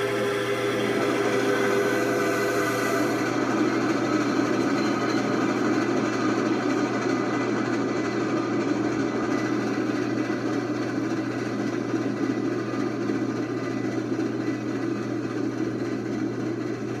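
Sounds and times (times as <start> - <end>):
steam train rolling by: 0.0 - 14.5.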